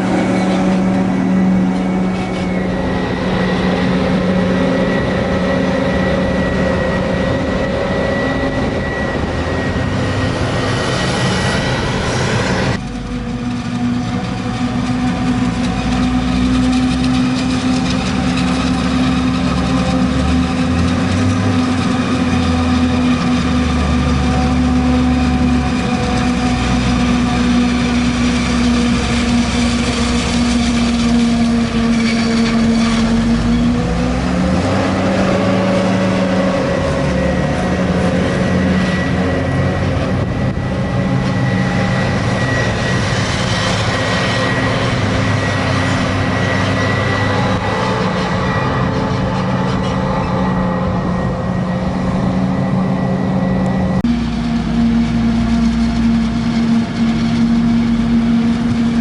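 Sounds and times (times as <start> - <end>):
tractors running: 0.0 - 59.0.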